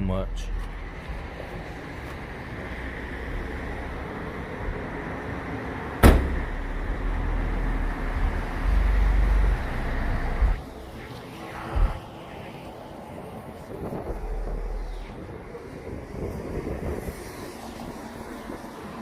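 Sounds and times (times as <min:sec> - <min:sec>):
traffic noise: 0:00.0 - 0:19.0
sharp loud knock: 0:06.0 - 0:06.5
low rumble on microphone: 0:06.0 - 0:12.1, 0:13.6 - 0:18.6.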